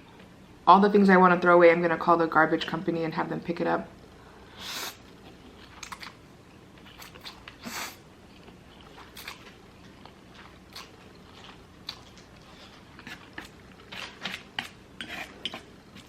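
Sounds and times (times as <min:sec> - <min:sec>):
mouth clicks and crunches: 0:05.3 - 0:06.2
biting and chewing: 0:08.3 - 0:16.0.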